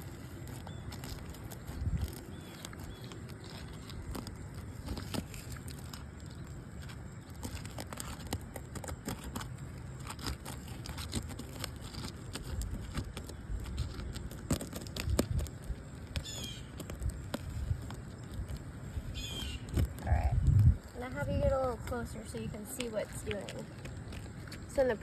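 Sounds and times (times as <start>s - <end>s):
asphalt shingles crackling and snapping: 0.0s - 25.0s
roof tool clicks and scrapes: 0.0s - 25.0s
bird calling: 16.2s - 17.0s, 19.0s - 20.1s.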